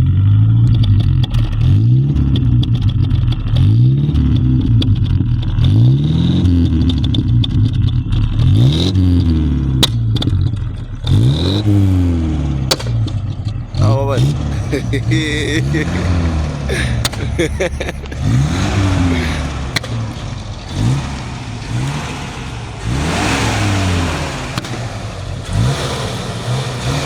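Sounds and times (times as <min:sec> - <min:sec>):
engine revving: 0:00.0 - 0:27.0.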